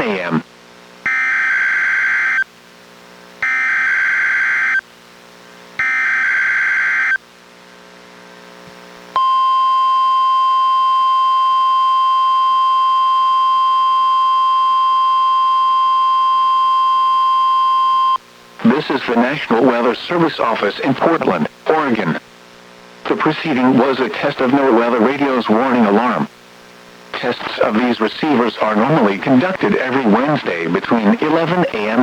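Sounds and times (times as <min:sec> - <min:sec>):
steady single-pitch alarm tone: 0:01.1 - 0:02.5, 0:03.4 - 0:04.8, 0:05.8 - 0:07.2, 0:09.2 - 0:18.2.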